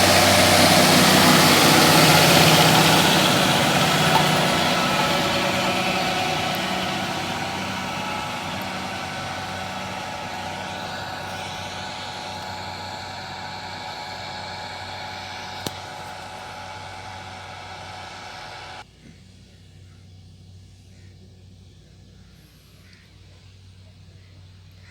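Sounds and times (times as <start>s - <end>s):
tractor diesel engine running: 0.0s - 18.8s.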